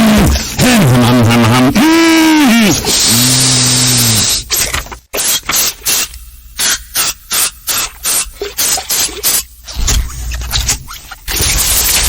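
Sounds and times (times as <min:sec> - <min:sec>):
distorted cartoon throat-clearing: 0:00.0 - 0:05.3.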